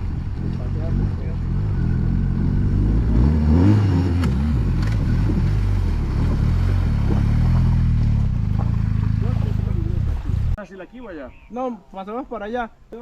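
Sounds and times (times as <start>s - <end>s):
motorcycle engine idling: 4.6s - 10.0s.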